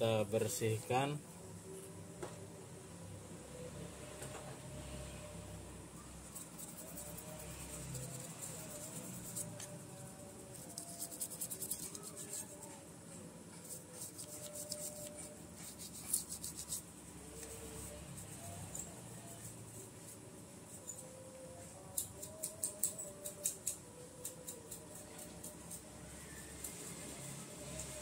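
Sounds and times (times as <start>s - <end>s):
scratchy scrubbing by hand: 6.4s - 9.6s, 10.4s - 12.7s, 13.6s - 16.9s.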